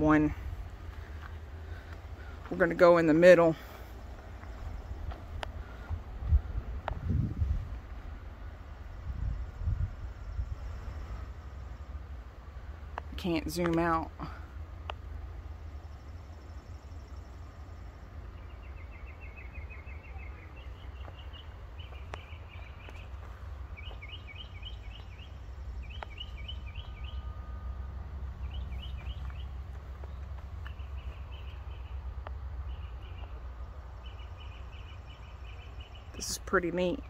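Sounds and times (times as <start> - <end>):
songbird chirping: 0.0 - 37.0
steady low rumble: 0.0 - 37.0.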